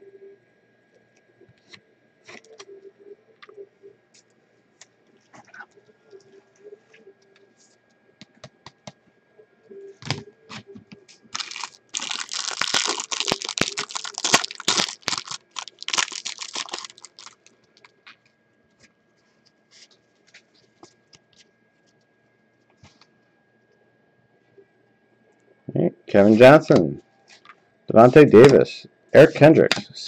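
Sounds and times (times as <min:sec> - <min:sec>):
card pack wrapper tearing and crinkling: 0:11.3 - 0:17.9.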